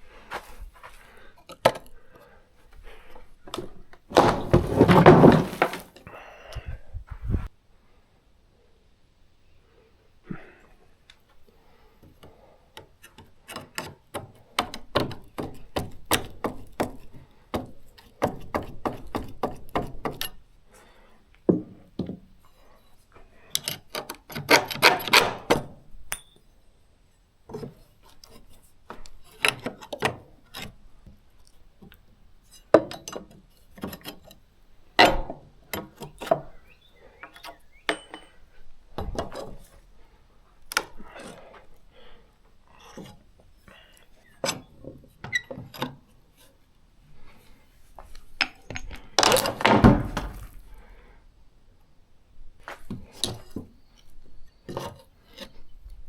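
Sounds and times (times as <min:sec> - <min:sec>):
tools clinking and scraping: 0:37.3 - 0:38.5.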